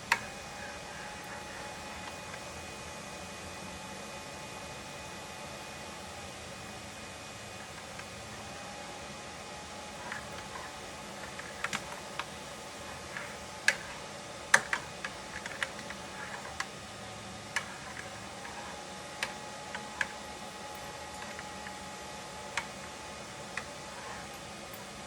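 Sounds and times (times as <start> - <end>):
small clicks and taps: 10.0 - 12.3, 13.1 - 16.7.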